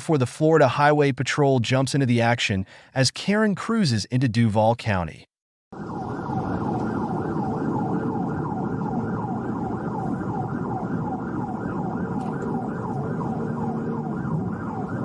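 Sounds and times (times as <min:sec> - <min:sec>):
police siren: 0:05.7 - 0:15.0
car engine and road noise: 0:05.8 - 0:15.0.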